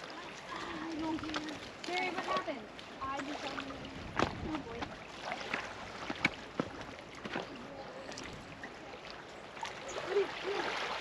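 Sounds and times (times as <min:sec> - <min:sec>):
little splashes and clicks: 0:00.0 - 0:08.4
small waves lapping on shore: 0:00.0 - 0:11.0.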